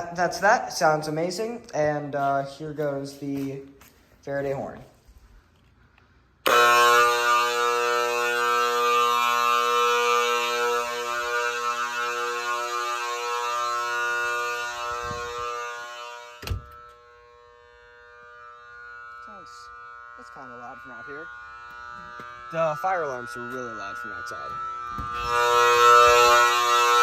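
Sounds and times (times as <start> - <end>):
fire alarm horn buzzing: 6.4 - 27.0.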